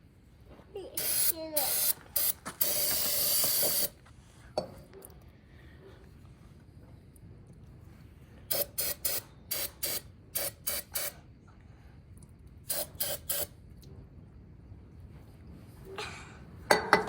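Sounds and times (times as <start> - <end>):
aerosol spray hissing: 1.0 - 3.9, 8.5 - 11.2, 12.7 - 13.5.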